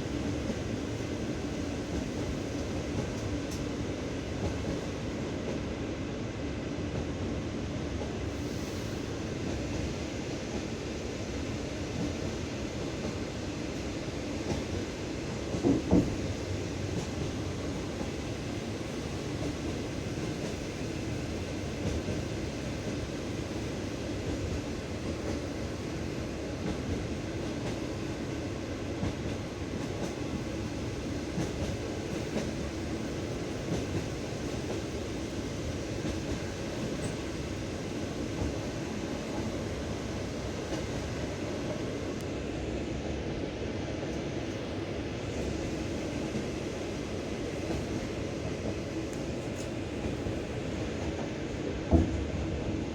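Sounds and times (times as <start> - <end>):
train wheels clattering over rail joints: 15.5 - 16.3.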